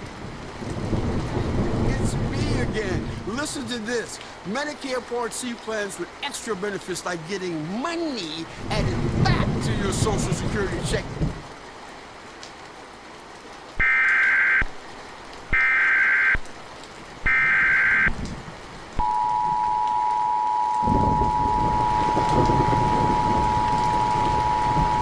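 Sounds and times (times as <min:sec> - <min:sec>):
warbling data tones: 0:17.3 - 0:18.1, 0:19.0 - 0:25.0
low rumbling noise: 0:19.0 - 0:25.0
two-tone attention signal: 0:19.0 - 0:25.0.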